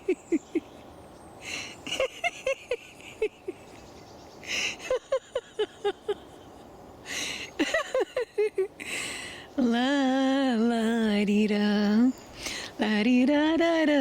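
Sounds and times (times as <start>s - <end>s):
sharp breaths drawn in: 1.4s - 1.8s, 4.4s - 4.8s, 7.0s - 7.6s, 8.8s - 9.6s, 12.3s - 12.8s
people laughing: 4.8s - 6.5s.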